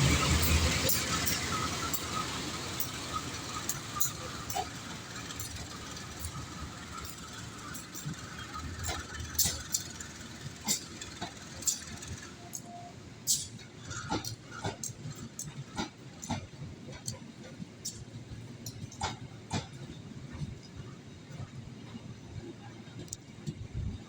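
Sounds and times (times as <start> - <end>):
rushing noise: 0.0 - 12.4
train rumbling: 0.0 - 24.0.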